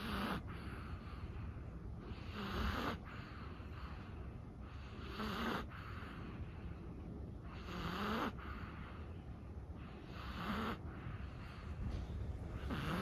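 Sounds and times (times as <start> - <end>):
dog breathing and snoring: 0.0 - 13.0.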